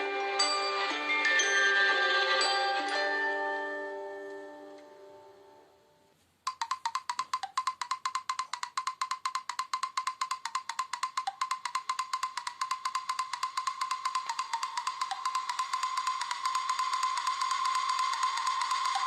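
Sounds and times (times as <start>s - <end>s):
phone ringtone clicks: 10.4s - 19.0s.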